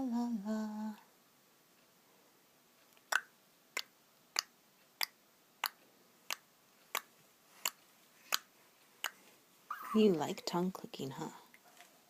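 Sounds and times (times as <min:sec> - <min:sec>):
tongue clicks: 0:03.0 - 0:09.2.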